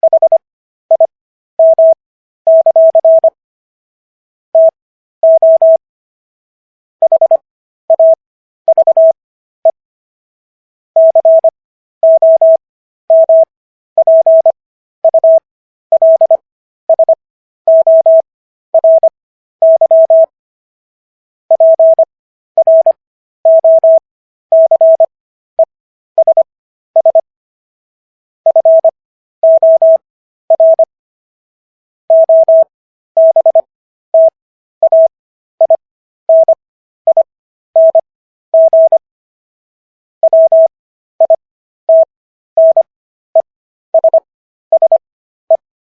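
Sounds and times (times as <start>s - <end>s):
morse code beeps: 0.0s - 3.4s, 4.6s - 5.8s, 7.0s - 9.8s, 11.0s - 18.2s, 18.8s - 20.3s, 21.5s - 25.1s, 26.2s - 27.3s, 28.5s - 30.9s, 32.1s - 39.0s, 40.2s - 45.6s.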